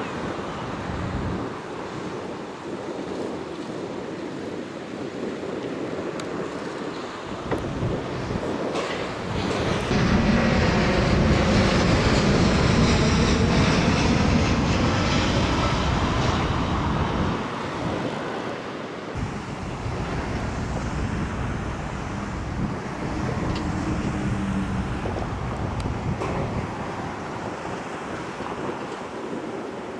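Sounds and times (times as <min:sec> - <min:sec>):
jet airliner passing overhead: 0:05.9 - 0:29.9.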